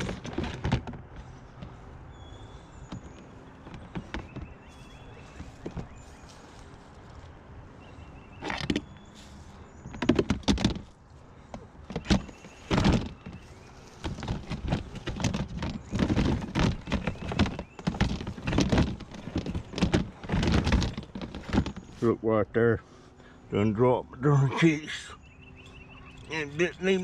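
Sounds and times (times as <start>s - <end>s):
plastic totes knocking and clattering: 0.0s - 6.1s, 9.8s - 22.1s.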